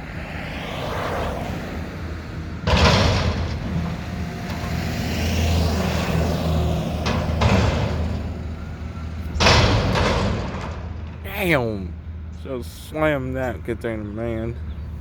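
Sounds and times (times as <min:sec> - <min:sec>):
garbage truck diesel engine running: 0:01.7 - 0:15.0.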